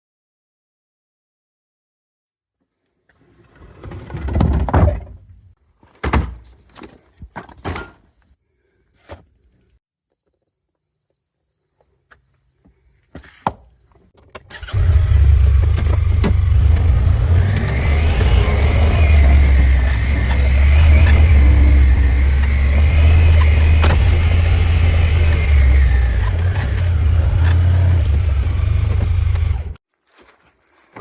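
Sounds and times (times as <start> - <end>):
clunks and knocks: 14.2 - 29.8
vehicle engine starting and running: 14.4 - 29.8.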